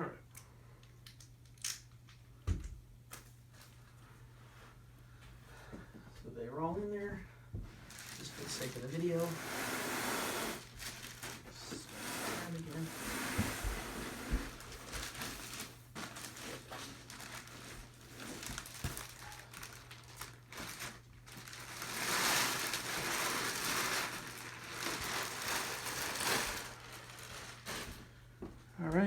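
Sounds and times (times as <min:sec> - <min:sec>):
packaging rustling and crinkling: 0:07.7 - 0:28.6.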